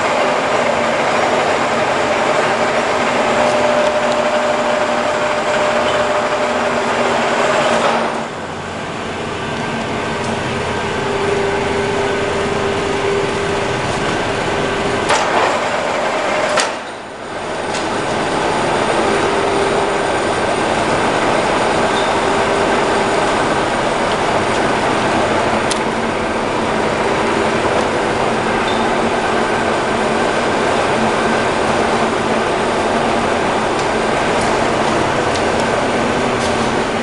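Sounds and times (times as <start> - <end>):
lathe whirring and rattling: 0.0 - 37.0.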